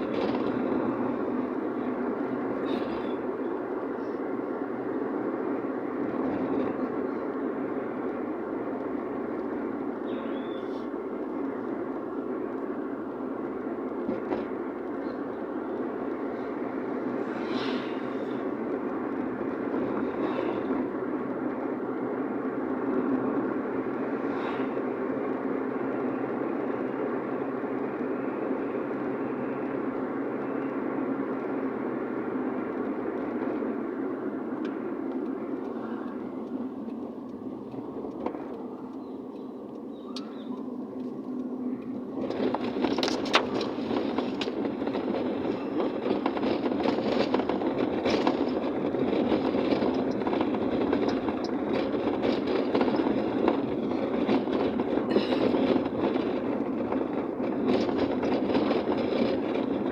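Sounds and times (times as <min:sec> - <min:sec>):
car road and engine noise: 0:00.0 - 0:59.9
faint clicks: 0:34.6 - 0:45.0.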